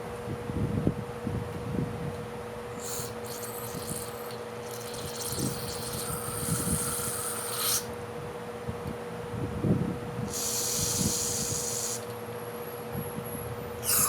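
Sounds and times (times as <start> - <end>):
faint steady hum: 0.0 - 14.0
pressurised spray hissing: 2.8 - 7.9, 10.3 - 12.1.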